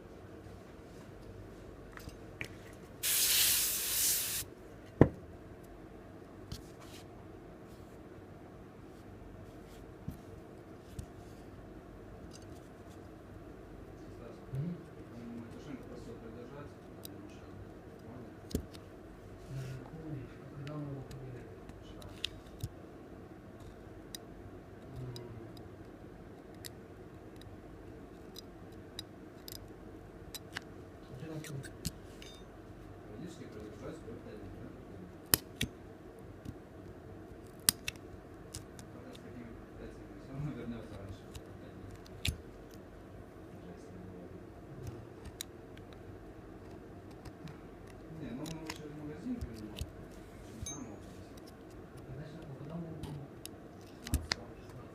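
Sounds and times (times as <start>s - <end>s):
steady low hum: 0.0s - 54.9s
spray hissing: 3.0s - 4.4s.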